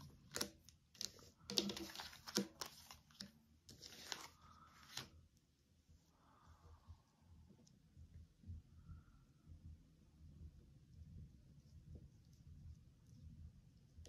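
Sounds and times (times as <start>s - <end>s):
paper rustling: 0.0s - 5.1s
cards clicking: 0.2s - 5.1s.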